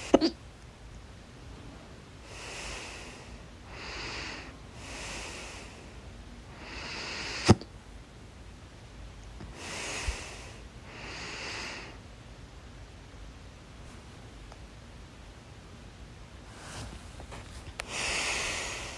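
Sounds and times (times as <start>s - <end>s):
person hiccupping: 0.1s - 0.4s
person breathing: 2.2s - 7.6s, 9.5s - 12.0s, 16.5s - 18.9s.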